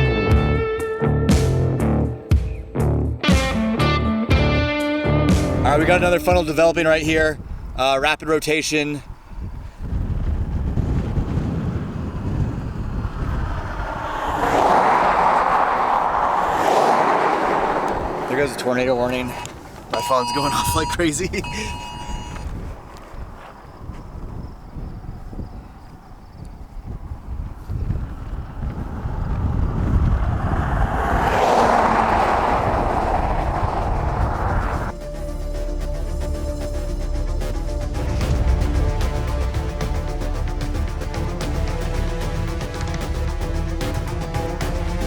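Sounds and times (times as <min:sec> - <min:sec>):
wind buffeting microphone: 0:05.6 - 0:34.9
rushing noise: 0:10.4 - 0:22.5, 0:27.8 - 0:34.9.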